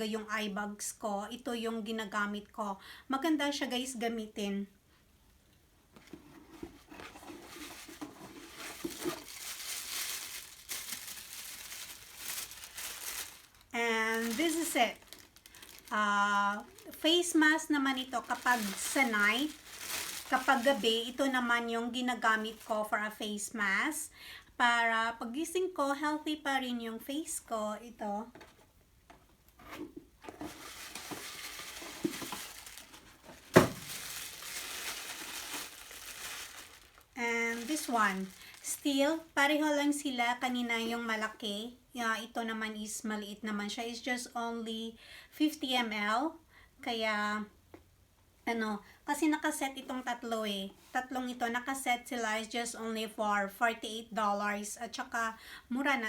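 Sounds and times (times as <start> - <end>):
packaging crinkling and rustling: 6.1 - 22.9, 29.6 - 39.4.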